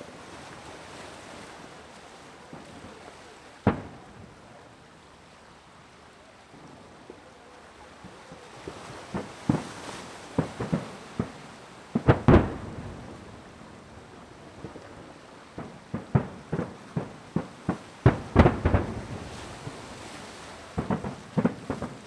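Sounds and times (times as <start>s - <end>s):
fireworks bursting with booming bangs: 2.5s - 4.7s, 8.6s - 22.0s.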